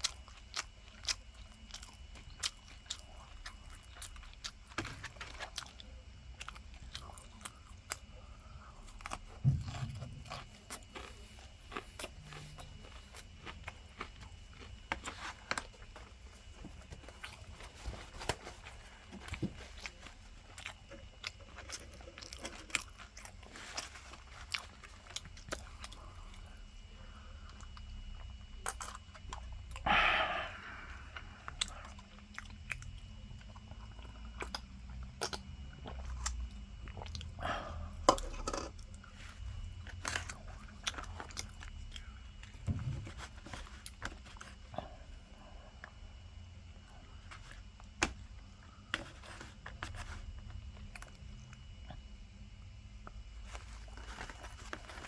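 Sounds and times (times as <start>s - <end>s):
person chewing crispy food: 0.0s - 55.0s.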